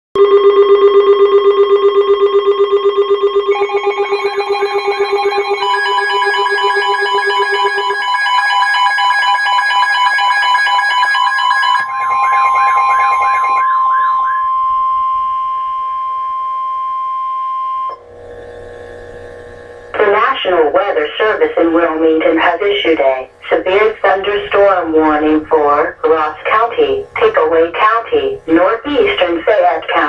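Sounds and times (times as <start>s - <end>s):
steady alert tone: 0.2s - 8.3s, 11.5s - 16.5s
pulsing electronic alarm beeps: 0.2s - 18.0s
warbling tone: 1.0s - 8.0s, 11.8s - 17.2s.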